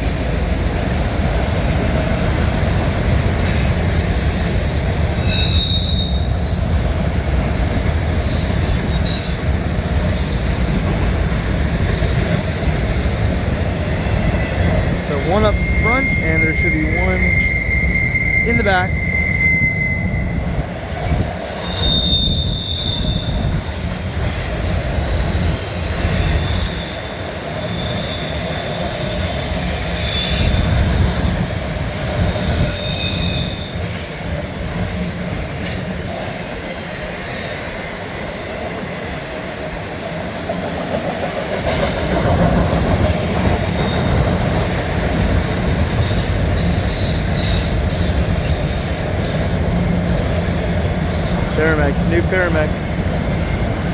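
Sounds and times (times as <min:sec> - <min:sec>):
steel wheels rumbling on rails: 0:00.0 - 0:53.9
high wheel squeals: 0:01.6 - 0:09.4, 0:10.1 - 0:20.7, 0:21.5 - 0:34.0.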